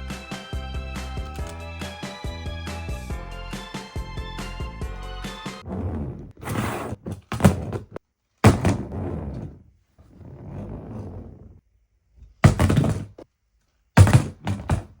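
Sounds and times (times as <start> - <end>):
loud thuds and knocks: 6.9 - 9.1, 12.4 - 13.2, 14.0 - 15.0.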